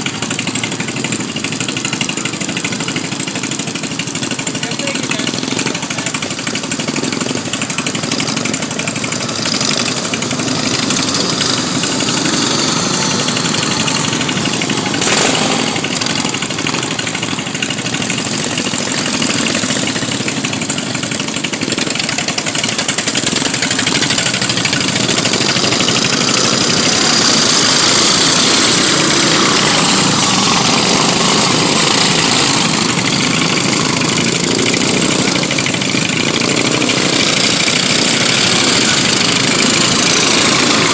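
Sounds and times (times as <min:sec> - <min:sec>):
lawn mower engines running hard: 0:00.0 - 0:40.9.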